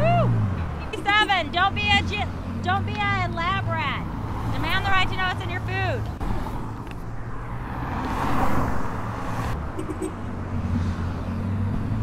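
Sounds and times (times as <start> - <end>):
low engine hum: 0.0 - 12.0
car passing by: 2.2 - 9.6.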